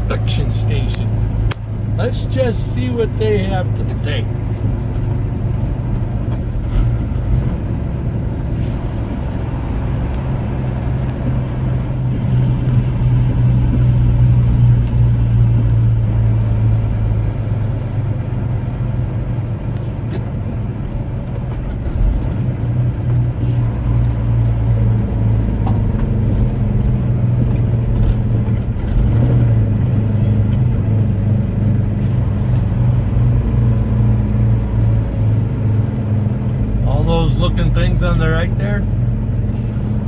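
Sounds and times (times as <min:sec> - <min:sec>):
truck engine droning: 0:00.0 - 0:40.0.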